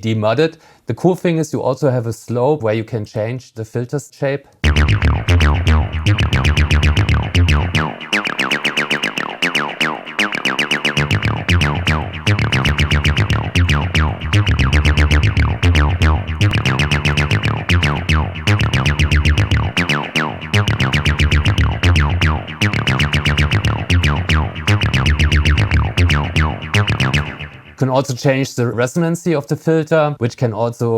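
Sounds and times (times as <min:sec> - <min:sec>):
distorted acid synth bassline: 0:04.6 - 0:27.8
heavy low bass: 0:04.6 - 0:27.8.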